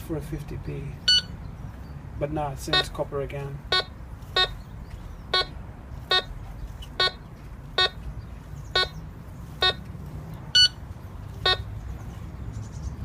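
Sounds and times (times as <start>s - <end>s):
metal detector beeps: 1.0s - 1.3s, 3.7s - 4.6s, 5.3s - 6.3s, 8.8s - 9.0s, 10.6s - 10.8s, 11.4s - 11.6s.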